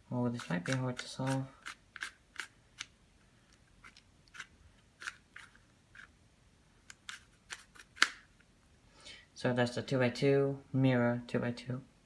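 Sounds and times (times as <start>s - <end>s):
puzzle cube plastic clicks: 0.4s - 6.1s, 6.9s - 8.3s.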